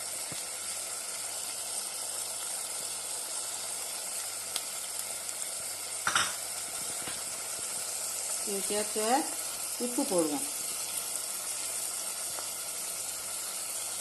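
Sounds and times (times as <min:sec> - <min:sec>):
meat sizzling in hot oil: 0:00.0 - 0:14.0.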